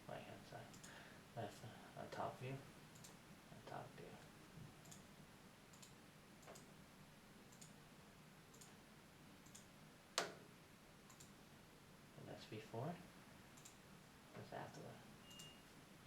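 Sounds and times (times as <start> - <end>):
faint ticks: 13.6 - 13.8.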